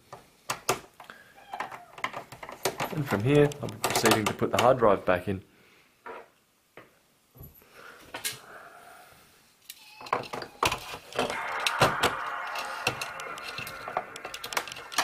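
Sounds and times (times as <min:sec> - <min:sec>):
computer parts clicking: 0:11.2 - 0:15.0.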